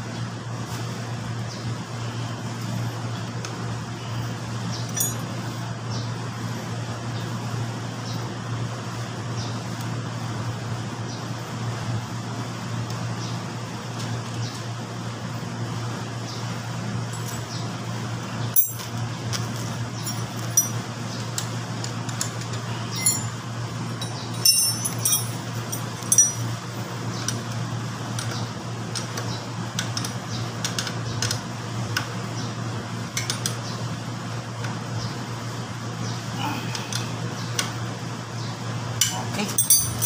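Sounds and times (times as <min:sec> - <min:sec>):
steady low hum: 0:00.0 - 0:40.0
metal tools clinking on parts: 0:04.9 - 0:05.4, 0:17.1 - 0:17.6, 0:18.6 - 0:21.0, 0:22.1 - 0:26.6, 0:39.0 - 0:40.0.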